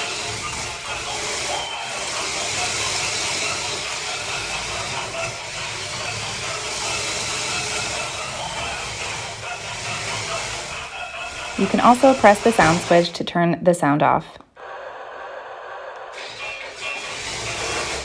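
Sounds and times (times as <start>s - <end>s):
toy electric motors and tracks: 0.0s - 13.5s, 14.3s - 18.0s
toy engine sound effects: 0.0s - 18.0s.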